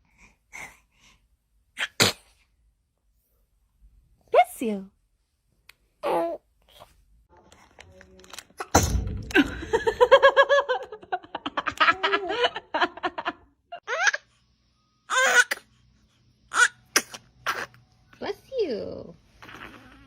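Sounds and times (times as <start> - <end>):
baby sneezing: 1.8 - 2.4, 15.1 - 15.7, 16.6 - 17.8
high-pitched baby laughter: 13.8 - 14.3.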